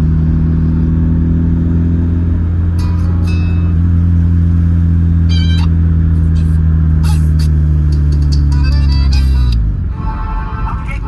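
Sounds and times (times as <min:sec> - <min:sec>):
music from car stereo: 0:07.1 - 0:11.0.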